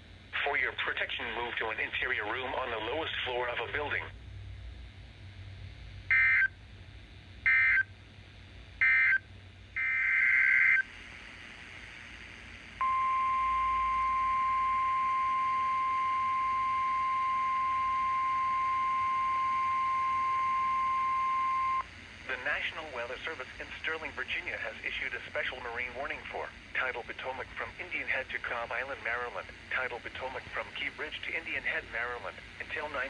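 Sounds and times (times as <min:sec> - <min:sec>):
steady warning alarm tone: 0:06.1 - 0:06.6, 0:07.4 - 0:07.9, 0:08.8 - 0:10.9, 0:12.8 - 0:24.0.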